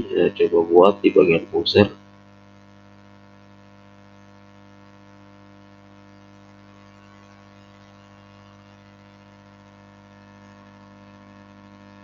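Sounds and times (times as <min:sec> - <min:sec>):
electrical hum: 0:00.0 - 0:02.0.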